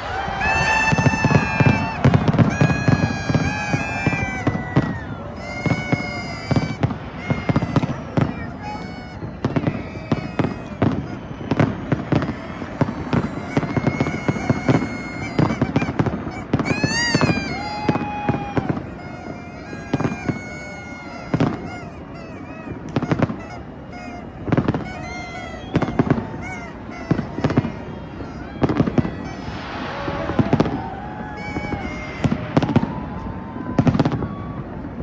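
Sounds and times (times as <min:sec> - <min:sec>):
whistles: 0:00.0 - 0:34.7
crowd noise: 0:00.0 - 0:35.0
fireworks bangs and crackles: 0:00.4 - 0:19.4, 0:20.0 - 0:21.7, 0:28.6 - 0:34.6.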